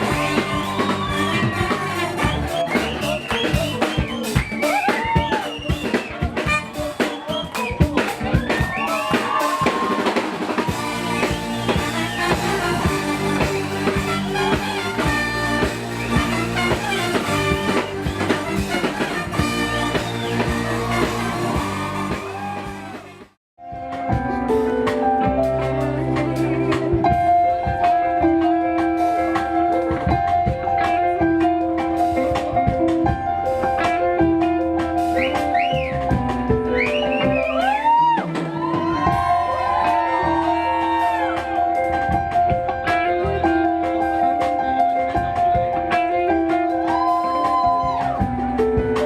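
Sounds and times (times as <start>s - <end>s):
person singing: 23.6s - 30.9s.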